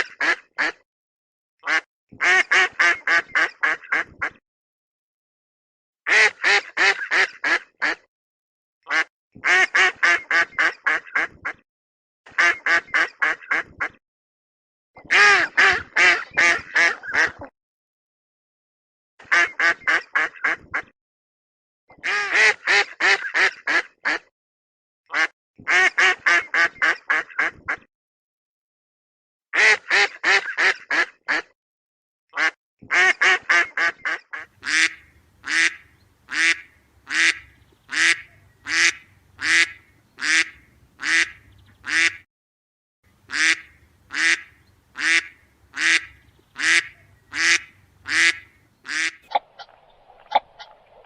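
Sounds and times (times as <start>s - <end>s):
duck quacking: 0.0s - 0.8s, 1.6s - 4.4s, 6.1s - 8.1s, 8.9s - 11.6s, 12.3s - 14.0s, 15.0s - 17.5s, 19.2s - 20.9s, 22.0s - 24.3s, 25.1s - 27.9s, 29.6s - 31.5s, 32.4s - 42.2s, 43.2s - 51.0s.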